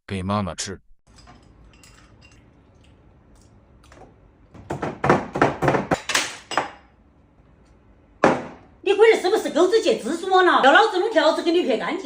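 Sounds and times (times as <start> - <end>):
sharp knocks and clatter: 4.6 - 6.8.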